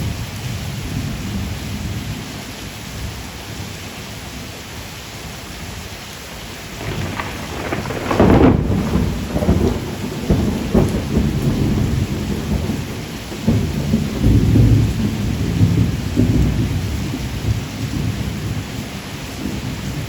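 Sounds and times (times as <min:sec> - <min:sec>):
steady rain hiss: 0:00.0 - 0:20.0
thunder rolling: 0:06.5 - 0:18.7.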